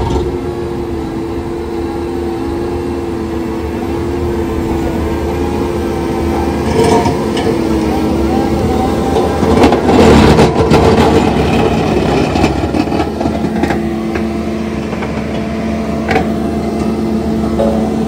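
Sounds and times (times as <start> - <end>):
engine running under load: 0.0 - 18.0
rotor head grinding soil and rocks: 4.0 - 17.6.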